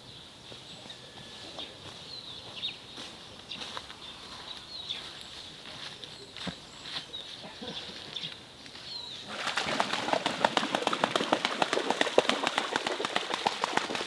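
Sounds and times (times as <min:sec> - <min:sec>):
pigeon wings flapping: 0:09.3 - 0:14.0.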